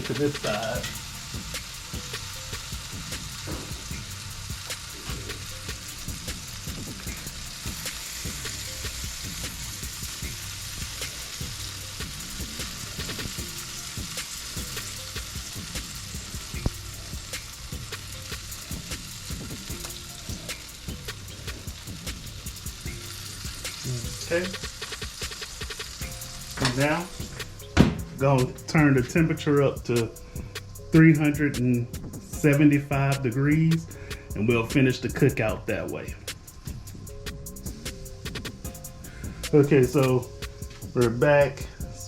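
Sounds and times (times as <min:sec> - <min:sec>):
meat sizzling on a grill: 0:00.0 - 0:31.4, 0:32.0 - 0:42.0.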